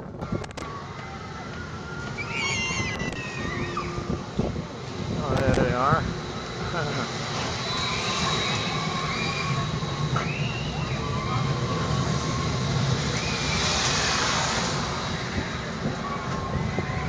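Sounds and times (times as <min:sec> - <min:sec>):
faint distant cries: 0:00.6 - 0:04.1
wind on microphone: 0:02.8 - 0:06.2.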